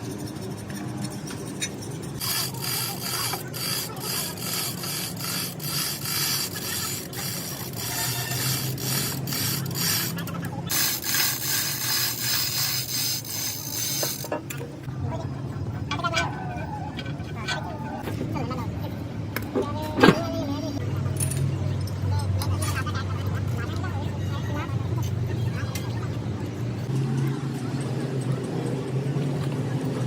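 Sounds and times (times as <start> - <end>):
hand tool rasping strokes: 0.0 - 14.6.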